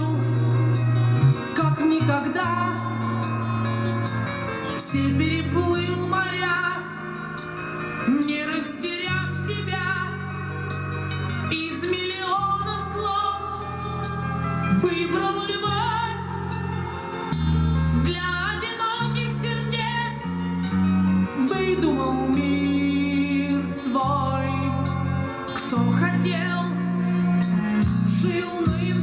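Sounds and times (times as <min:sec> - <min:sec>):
rock song over loudspeakers: 0:00.0 - 0:29.0.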